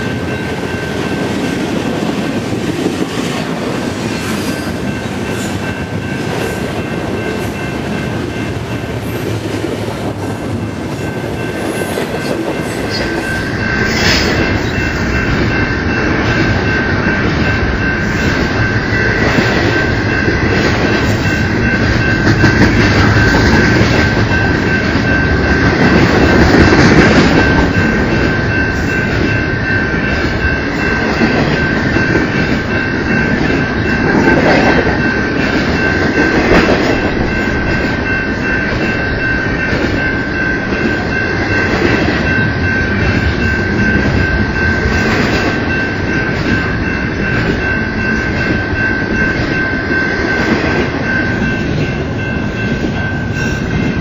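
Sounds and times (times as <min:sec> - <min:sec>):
train cars rolling by: 0:00.0 - 0:54.0.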